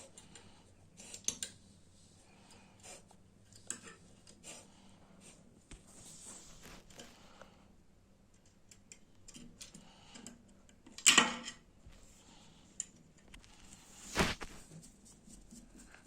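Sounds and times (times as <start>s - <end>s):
clicks and taps of metal parts: 8.3s - 11.6s.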